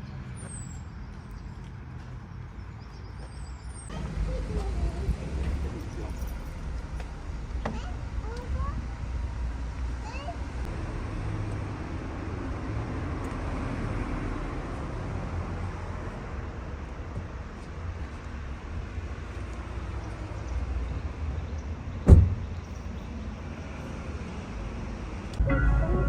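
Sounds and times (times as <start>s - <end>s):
sharp thump: 22.1s - 22.4s.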